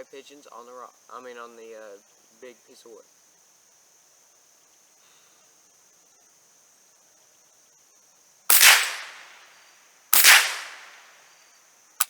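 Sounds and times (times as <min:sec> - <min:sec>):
rifle shots: 0:08.5 - 0:09.5, 0:10.2 - 0:11.2.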